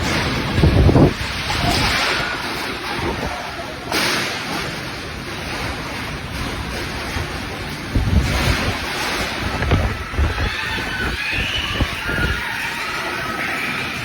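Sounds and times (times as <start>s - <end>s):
storm wind rushing: 0.0s - 3.5s, 6.5s - 13.3s
wind gusts buffeting microphone: 0.0s - 3.9s, 5.1s - 12.8s.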